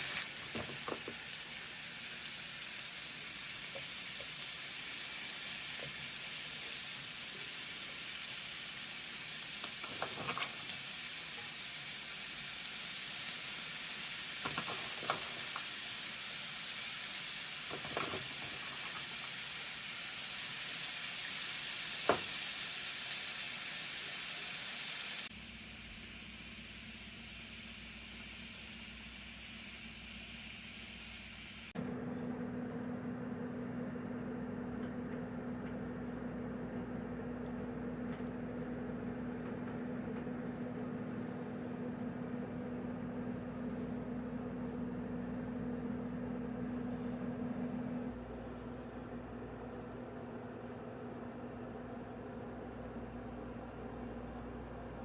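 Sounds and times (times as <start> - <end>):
food sizzling in a frying pan: 0.0 - 31.7.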